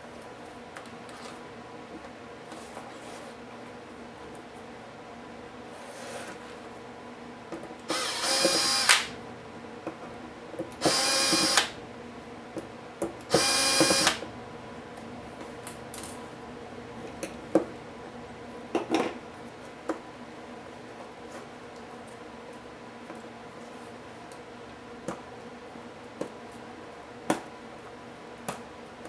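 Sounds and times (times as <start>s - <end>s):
power screwdriver running: 7.9s - 9.2s, 10.8s - 11.8s, 13.3s - 14.3s
short clicks: 7.9s - 9.2s, 10.8s - 11.8s, 13.3s - 14.2s.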